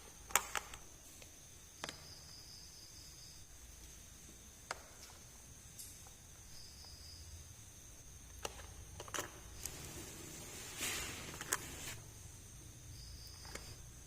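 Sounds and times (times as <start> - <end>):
faint steady hiss: 0.0 - 14.0
plastic toys clicking: 0.2 - 0.8.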